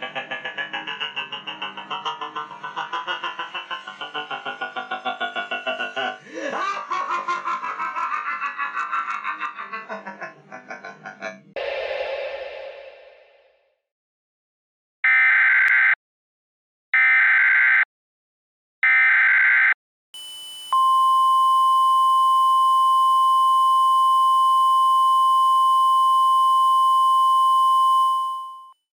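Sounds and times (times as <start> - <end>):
steady pure tone: 11.6 - 13.3.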